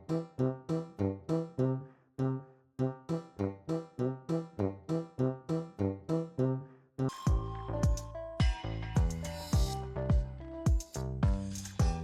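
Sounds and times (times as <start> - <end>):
deep kick drum beating: 7.3 - 12.0.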